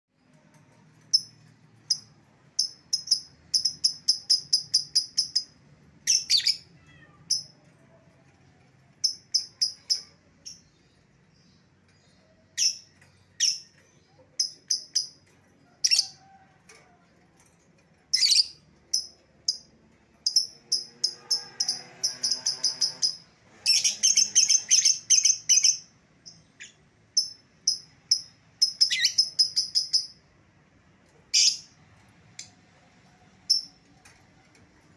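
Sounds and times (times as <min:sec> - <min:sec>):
lovebird chirping: 0:01.0 - 0:06.7, 0:09.0 - 0:16.3, 0:18.1 - 0:30.3, 0:31.3 - 0:31.8.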